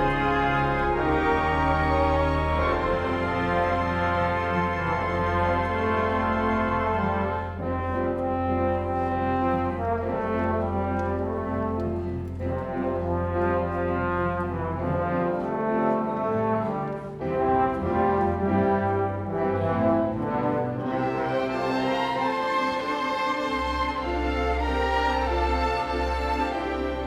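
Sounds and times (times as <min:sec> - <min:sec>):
orchestra brass-led chords: 0:00.0 - 0:27.0.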